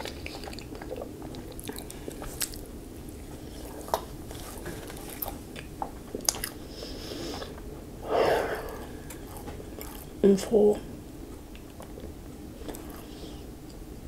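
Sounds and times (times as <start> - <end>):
wet mouth clicks and smacks: 0.0 - 2.6
person chewing food: 0.0 - 10.2, 11.2 - 13.8.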